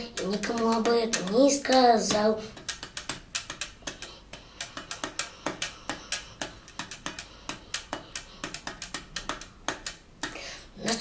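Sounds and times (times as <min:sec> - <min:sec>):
knuckles knocking on desk: 0:02.1 - 0:10.4.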